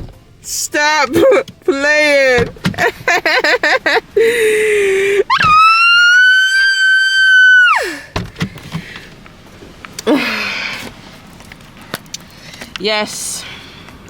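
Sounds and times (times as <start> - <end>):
lower cry: 4.2 - 8.1
woman screaming: 4.8 - 8.1.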